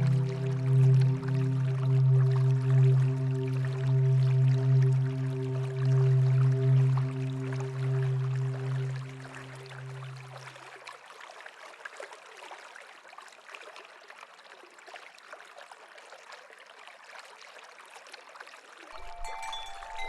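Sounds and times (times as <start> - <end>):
low music chord: 0.0 - 10.5, 19.0 - 20.0
water trickling over stones: 0.0 - 20.0.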